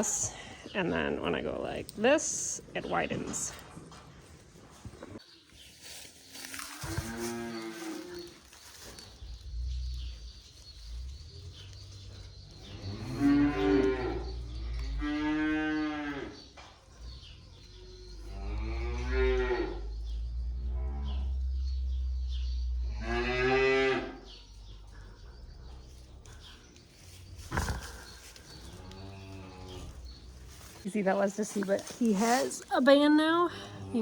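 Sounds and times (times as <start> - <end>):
calves mooing: 12.7 - 16.4.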